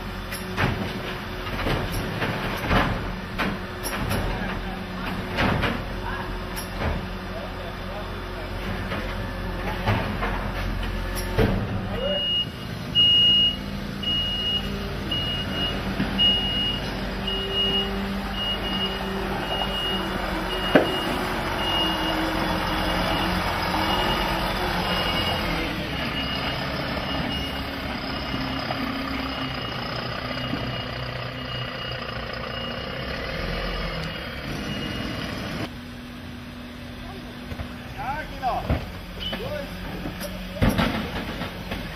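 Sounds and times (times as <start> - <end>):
truck engine running: 0.0 - 41.9
reversing alarm beeping: 12.0 - 35.5.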